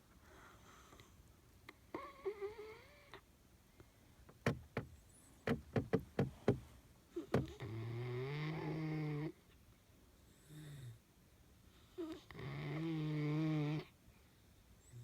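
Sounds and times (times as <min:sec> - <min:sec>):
puppy snoring: 0:01.9 - 0:03.2, 0:07.2 - 0:09.4, 0:10.3 - 0:11.0, 0:11.8 - 0:14.0
sharp knocks: 0:04.4 - 0:06.6.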